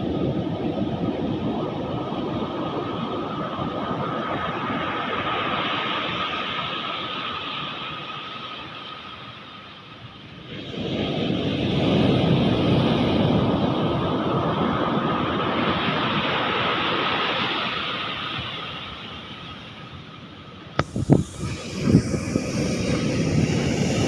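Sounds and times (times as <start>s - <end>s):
ocean wave breaking: 20.8s - 24.0s.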